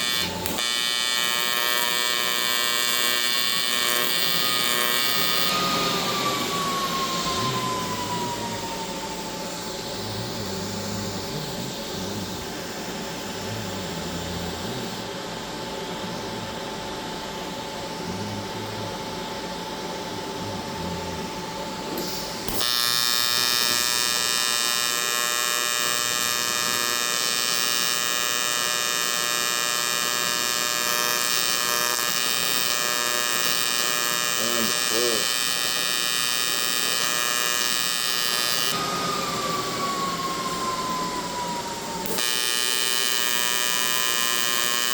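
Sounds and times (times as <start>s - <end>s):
welding arc buzz: 0.0s - 19.0s, 19.7s - 44.9s
hum with faint whine: 5.5s - 22.6s.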